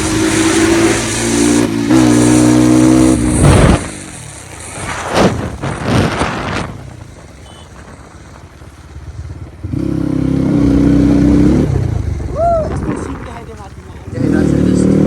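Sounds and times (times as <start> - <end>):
vehicle droning: 0.0 - 15.0.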